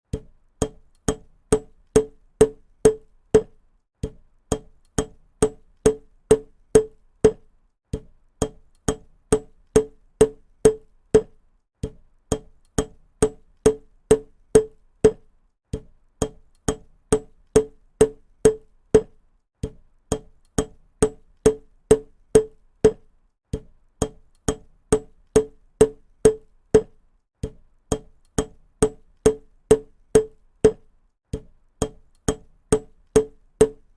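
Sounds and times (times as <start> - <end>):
hammer striking: 0.1 - 7.5, 8.4 - 11.4, 24.0 - 27.0, 27.9 - 30.9.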